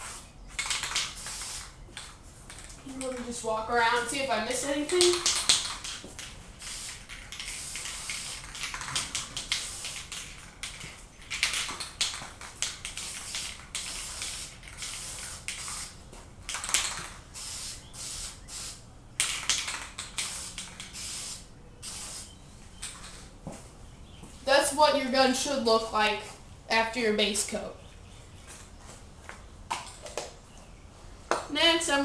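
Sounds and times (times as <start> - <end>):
spray paint can hissing: 0.0 - 1.8, 4.0 - 23.2.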